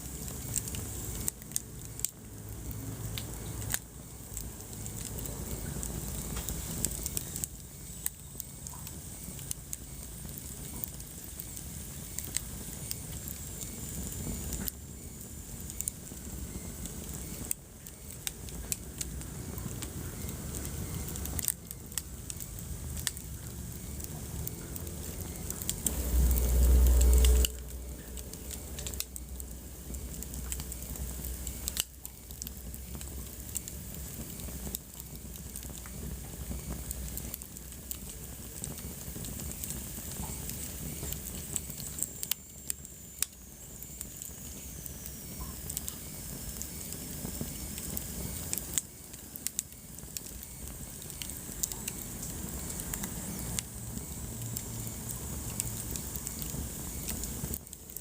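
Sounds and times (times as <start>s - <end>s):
sharp pops from fire: 0.0s - 58.0s
wood fire crackling: 0.0s - 58.0s
deep rumble: 22.6s - 31.6s.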